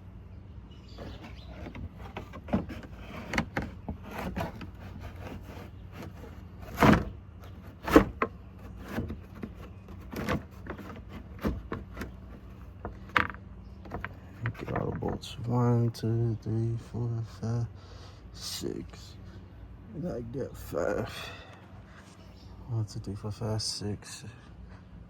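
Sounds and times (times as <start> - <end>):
plastic tray clattering and knocking: 1.0 - 15.4.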